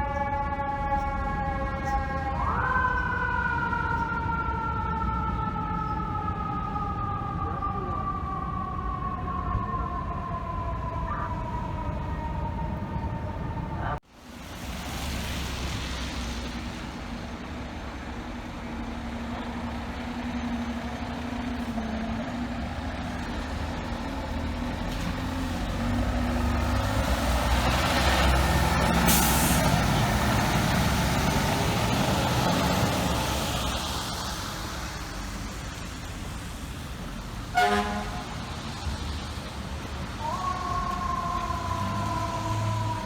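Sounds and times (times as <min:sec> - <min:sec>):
diesel engine running: 0:16.7 - 0:38.5
air brakes hissing: 0:28.9 - 0:29.8.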